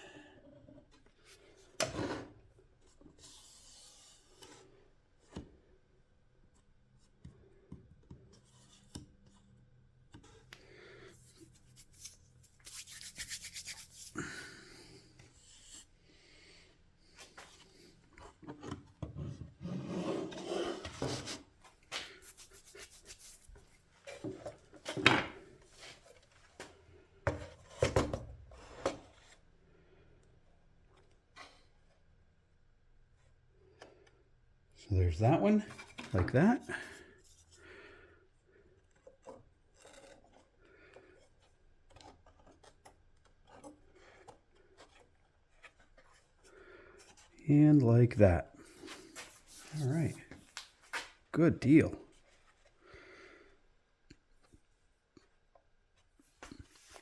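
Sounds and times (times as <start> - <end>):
parts rubbing and scraping: 48.7 - 51.1.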